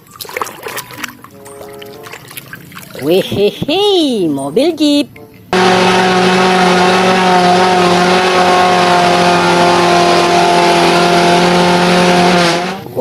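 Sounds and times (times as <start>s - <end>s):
loud steady motor drone: 5.5s - 13.0s.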